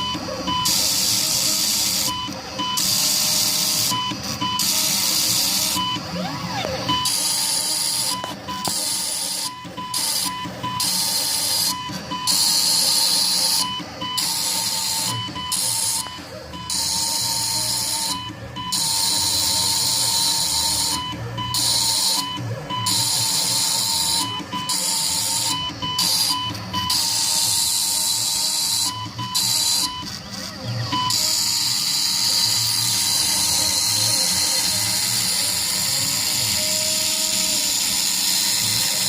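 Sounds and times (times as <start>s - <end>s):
engraver motors whining: 0.0s - 39.0s.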